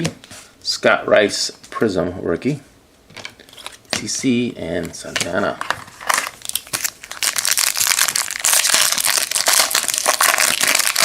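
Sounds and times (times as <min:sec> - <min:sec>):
plastic wrapper crinkling: 0:05.5 - 0:11.0.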